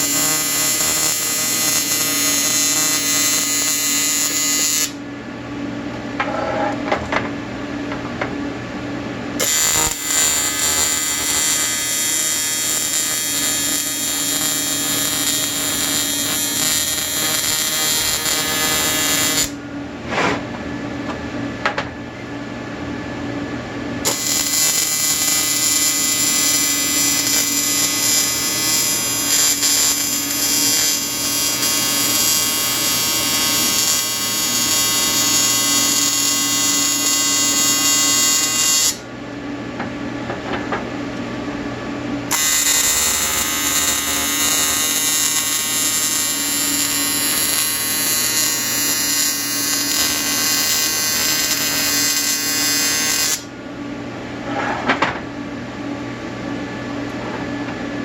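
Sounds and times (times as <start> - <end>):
welding arc buzzing: 0.0 - 5.0, 9.4 - 19.6, 24.0 - 39.1, 42.3 - 53.5.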